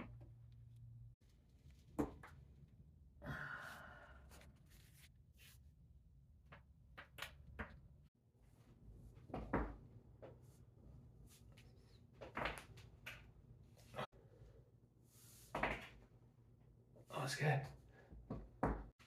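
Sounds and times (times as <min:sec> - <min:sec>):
breathy sound: 0:03.2 - 0:04.6.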